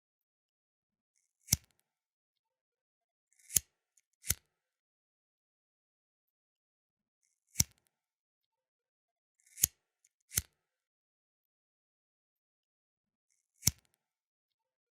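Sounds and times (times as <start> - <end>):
lighter wheel scrape: 3.4 - 4.4, 9.5 - 10.5.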